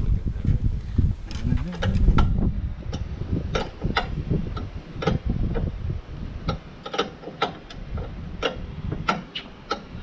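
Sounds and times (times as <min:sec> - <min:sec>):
low rumble: 0:00.0 - 0:06.6
hand tools clicking on metal: 0:02.9 - 0:05.7, 0:06.5 - 0:10.0.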